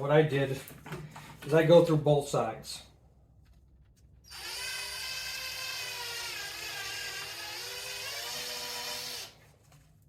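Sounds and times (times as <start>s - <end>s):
electric drill whining: 4.2s - 9.4s.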